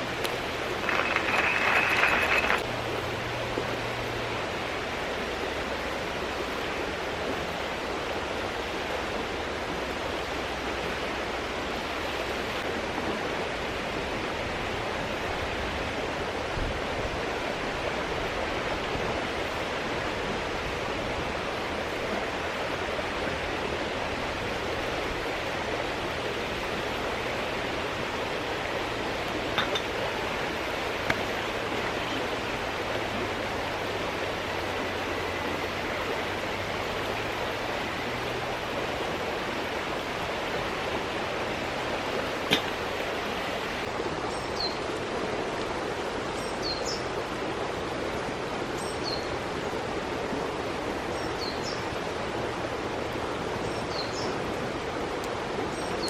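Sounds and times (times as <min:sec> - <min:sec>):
mountain stream flowing: 0:00.0 - 0:56.0
small clinks: 0:00.8 - 0:02.6.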